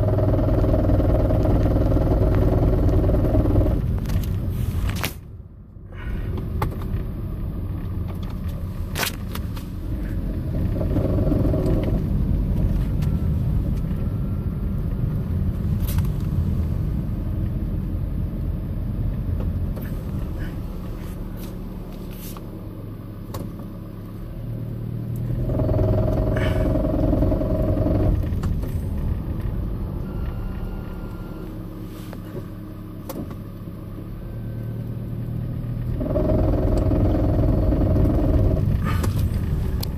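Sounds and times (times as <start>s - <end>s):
car road and drivetrain rumble: 0.0s - 39.9s
petrol engine note: 25.5s - 32.6s.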